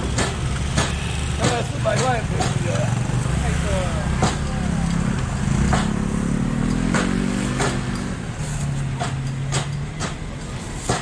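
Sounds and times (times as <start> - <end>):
sharp knocks: 0.0 - 2.8, 6.8 - 8.0, 9.0 - 10.3.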